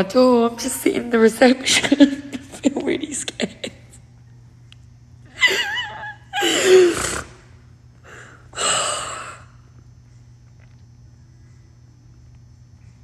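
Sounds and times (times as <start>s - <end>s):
air conditioning hum: 0.0s - 13.0s
woman crying and sobbing: 1.1s - 4.0s, 5.3s - 7.3s.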